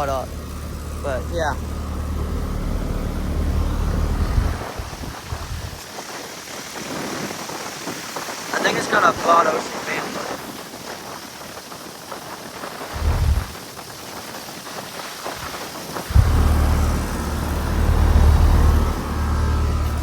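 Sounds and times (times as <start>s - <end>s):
heat pump fan rushing air: 0.0s - 5.8s, 12.9s - 13.7s, 16.1s - 20.0s
loud low rumble: 0.0s - 5.8s, 13.0s - 13.6s, 16.1s - 20.0s.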